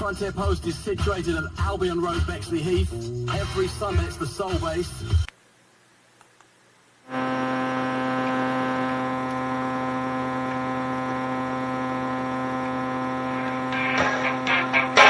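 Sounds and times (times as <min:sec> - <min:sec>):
music: 0:00.0 - 0:05.3, 0:12.4 - 0:15.0
electrical hum: 0:02.6 - 0:15.0.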